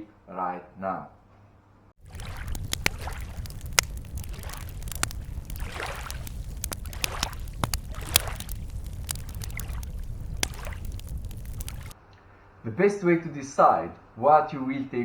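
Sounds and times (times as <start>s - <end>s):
low wind-like rumble: 2.0s - 12.0s
water sloshing and splashing: 2.0s - 12.0s
sharp clicks: 2.5s - 12.0s.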